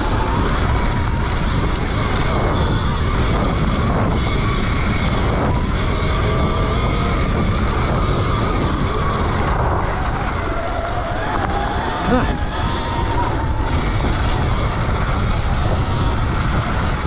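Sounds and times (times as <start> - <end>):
electric motor whine: 0.0 - 17.0
wind rush: 0.0 - 17.0.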